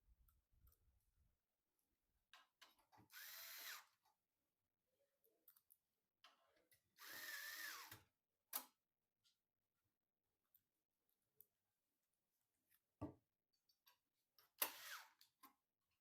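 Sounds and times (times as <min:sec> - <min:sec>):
electric screwdriver motor whine: 0:03.1 - 0:03.9, 0:07.0 - 0:07.9, 0:14.6 - 0:15.1.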